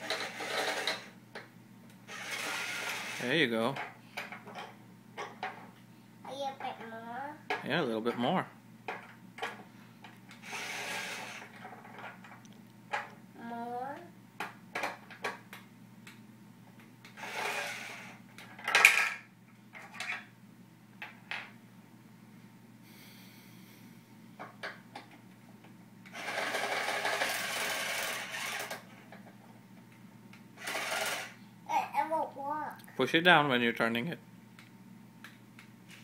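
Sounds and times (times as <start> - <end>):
cordless drill whirring: 2.1 - 3.2, 10.4 - 11.5, 17.2 - 18.1, 26.1 - 28.8, 30.6 - 31.4.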